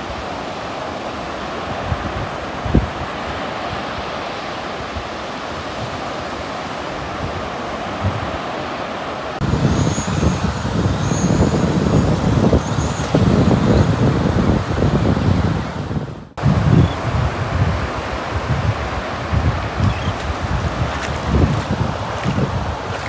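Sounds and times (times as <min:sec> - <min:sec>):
surf noise: 0:00.0 - 0:23.0
wind buffeting microphone: 0:09.4 - 0:23.0.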